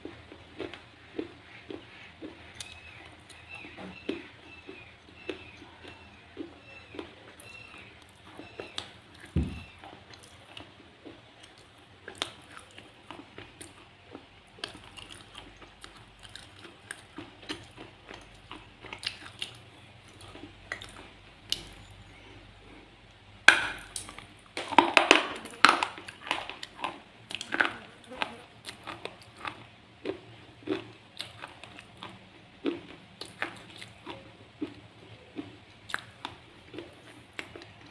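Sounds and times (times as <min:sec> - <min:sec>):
crunching and chewing slate pencil: 0:00.0 - 0:23.2, 0:23.8 - 0:37.9
low thud: 0:09.4 - 0:09.7.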